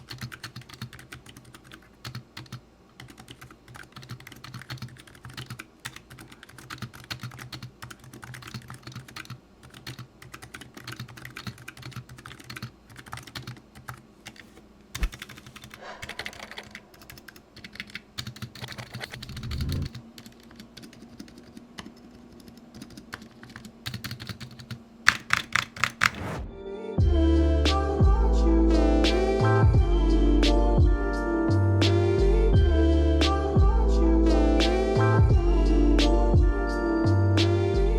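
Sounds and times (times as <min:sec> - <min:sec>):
fast typing on keyboard: 0:00.0 - 0:26.3.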